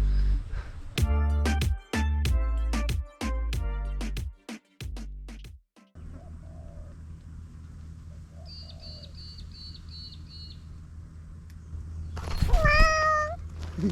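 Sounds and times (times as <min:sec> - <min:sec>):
background music: 0:01.0 - 0:05.9
dove cooing: 0:06.0 - 0:07.1.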